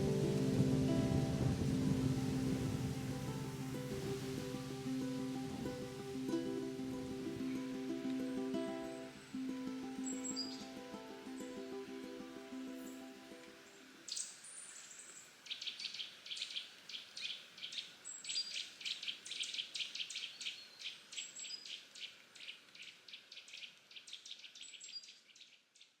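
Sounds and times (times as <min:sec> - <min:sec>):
background music: 0:00.0 - 0:13.6.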